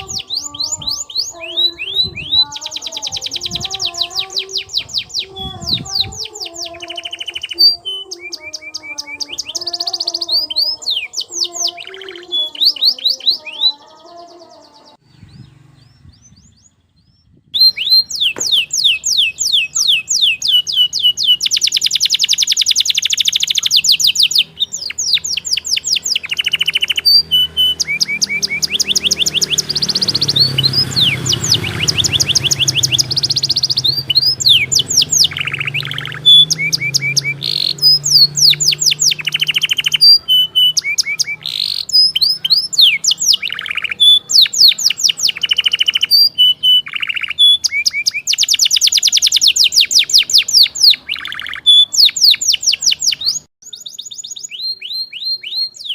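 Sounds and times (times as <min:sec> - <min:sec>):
canary singing trills: 0:00.0 - 0:55.9.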